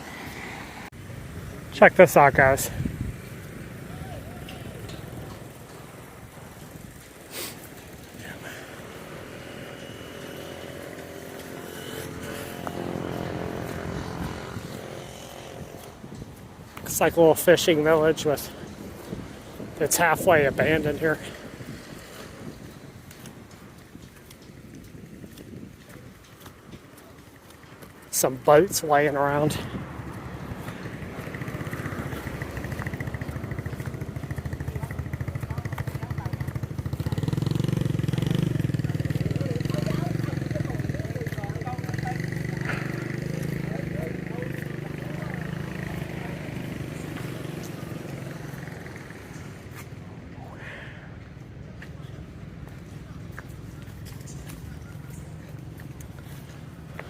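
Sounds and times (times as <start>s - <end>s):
motor engine humming: 0.0s - 21.6s.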